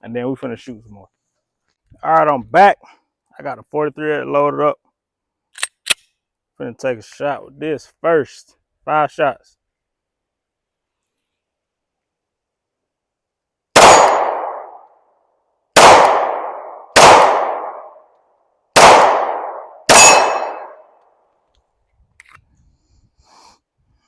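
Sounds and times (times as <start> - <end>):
pistol shots with echo: 13.8 - 14.8, 15.8 - 18.0, 18.8 - 20.8.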